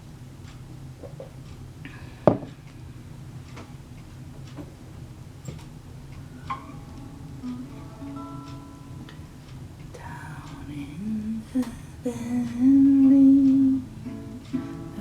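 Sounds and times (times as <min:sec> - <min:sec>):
wood fire crackling: 0:00.0 - 0:12.7
low steady rumble: 0:00.0 - 0:15.0
guitar playing: 0:06.2 - 0:15.0.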